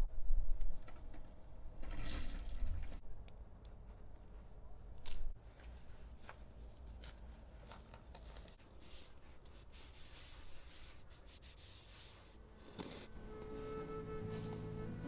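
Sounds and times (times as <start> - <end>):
rustling and rubbing: 5.2 - 15.0.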